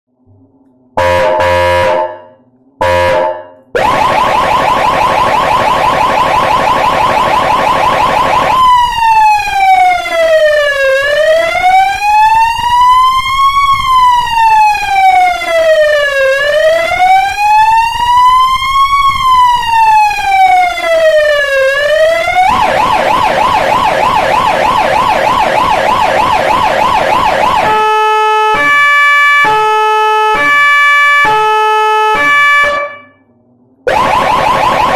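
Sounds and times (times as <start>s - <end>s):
horn blasts: 1.0s - 3.6s
electronic siren wailing: 1.0s - 33.2s, 33.9s - 34.9s.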